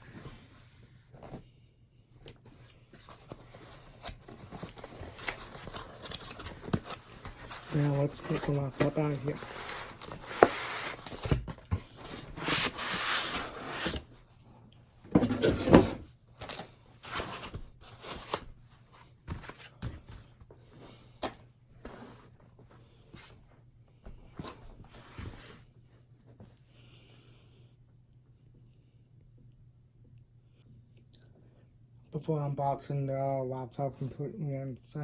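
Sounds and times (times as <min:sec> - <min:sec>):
packaging rustling and sliding: 0:02.4 - 0:14.2, 0:15.1 - 0:18.6, 0:24.4 - 0:25.6.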